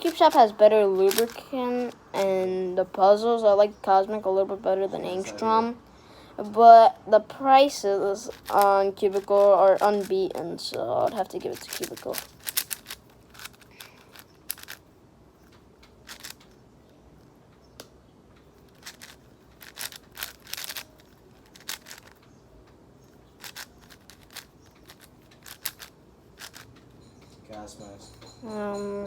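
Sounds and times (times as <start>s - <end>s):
puzzle cube clicking: 0.0s - 2.4s, 8.2s - 14.8s, 15.5s - 16.6s, 18.5s - 22.3s, 23.3s - 26.8s.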